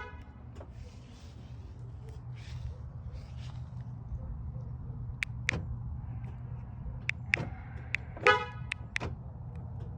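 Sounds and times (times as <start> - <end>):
sharp clicks: 5.2 - 5.6
car horn chirp: 8.2 - 8.9.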